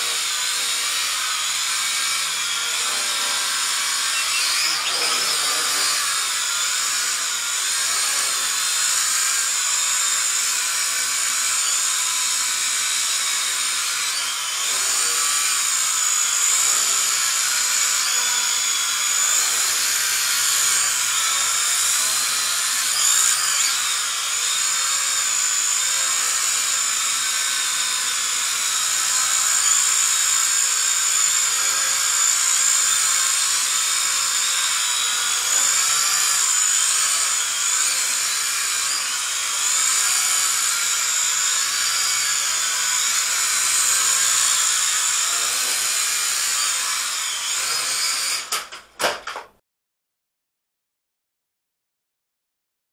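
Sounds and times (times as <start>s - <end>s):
quadcopter motors buzzing: 0.0s - 48.6s.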